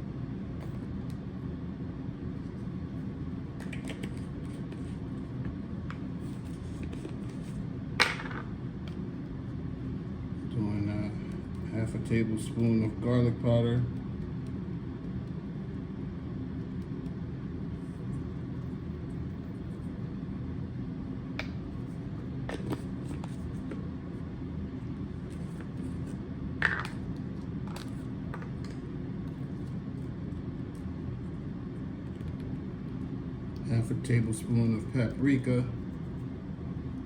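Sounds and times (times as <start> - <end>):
low kitchen hum: 0.0 - 37.0.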